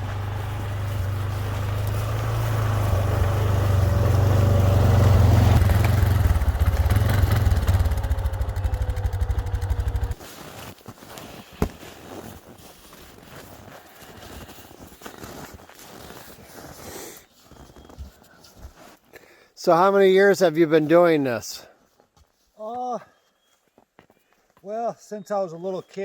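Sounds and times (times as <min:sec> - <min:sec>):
atv engine rumbling: 0:00.0 - 0:10.2.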